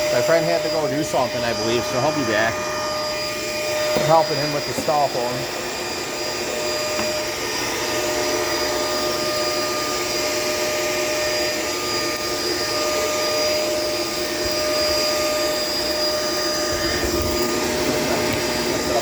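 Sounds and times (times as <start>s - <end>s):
vacuum cleaner running: 0.0s - 19.0s.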